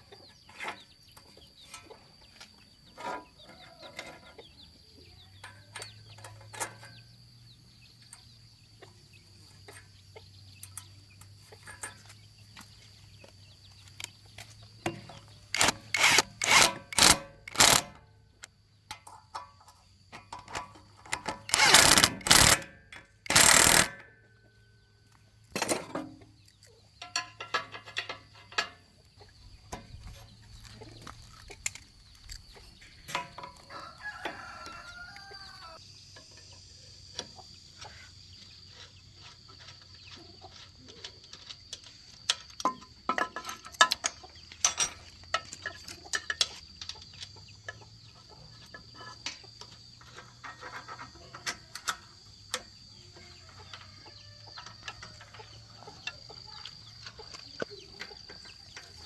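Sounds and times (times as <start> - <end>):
sharp clicks and knocks: 13.9 - 24.1
rooster crowing: 33.6 - 35.8.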